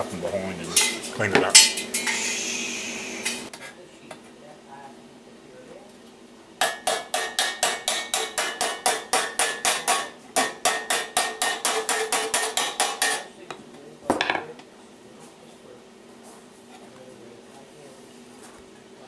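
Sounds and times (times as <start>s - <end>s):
hammer striking sheet steel: 0.0s - 3.5s, 6.6s - 13.3s.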